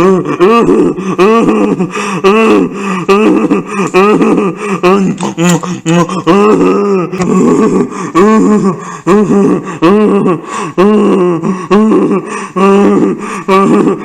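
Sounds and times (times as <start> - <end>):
cartoon voice gasping or grunting: 4.8 - 14.0.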